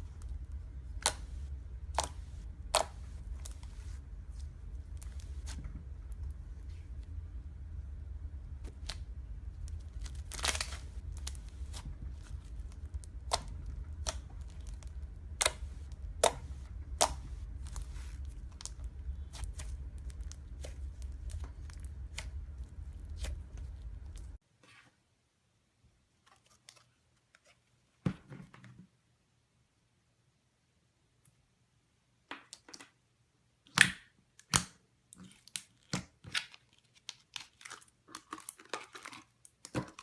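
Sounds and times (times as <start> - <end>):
steady low hum: 0.0 - 24.4.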